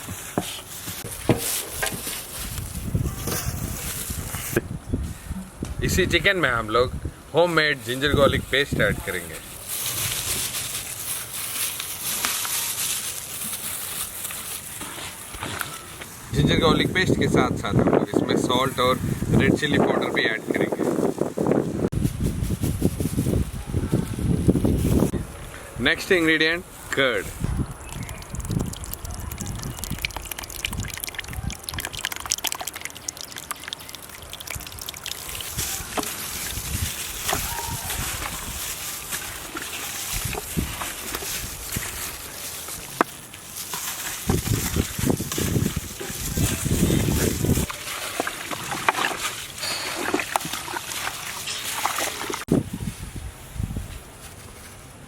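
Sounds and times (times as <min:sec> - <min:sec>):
dull low thuds: 0:27.4 - 0:27.7
wet trickling and dripping: 0:27.4 - 0:52.5.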